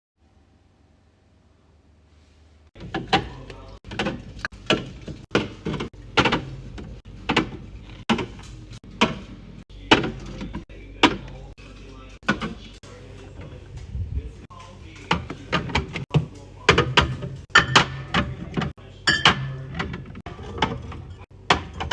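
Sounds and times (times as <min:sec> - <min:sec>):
containers knocked on shelves: 0:02.8 - 0:11.4, 0:15.1 - 0:21.9.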